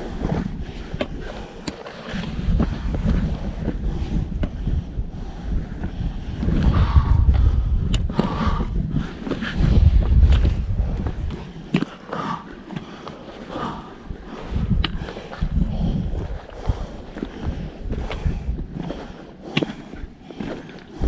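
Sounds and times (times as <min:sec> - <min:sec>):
wind buffeting microphone: 0:02.1 - 0:12.4, 0:13.6 - 0:20.2.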